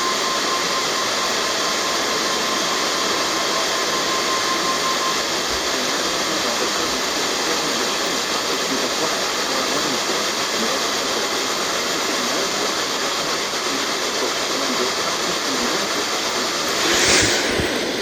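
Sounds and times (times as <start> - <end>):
radio static hiss: 12.0 - 18.0.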